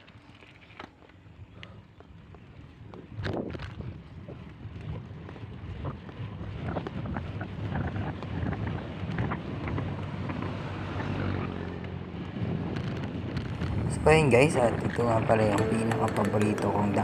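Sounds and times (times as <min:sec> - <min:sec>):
bike clicks and rattles: 0:00.0 - 0:13.8
wind buffeting microphone: 0:02.5 - 0:11.4, 0:12.0 - 0:15.6.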